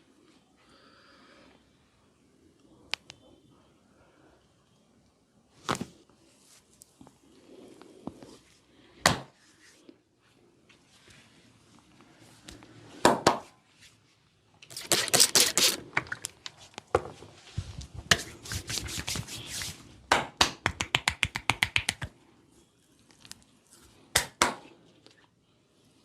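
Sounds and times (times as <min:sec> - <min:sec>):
hands smacking body in massage: 0:18.1 - 0:22.1.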